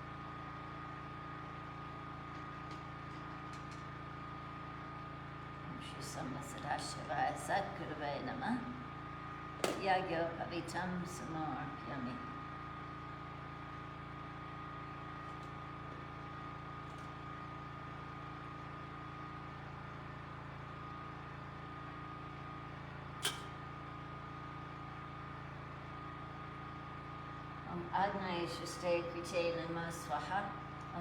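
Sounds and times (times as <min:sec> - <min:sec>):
generator humming: 0:00.0 - 0:31.0
sharp click: 0:23.2 - 0:23.5.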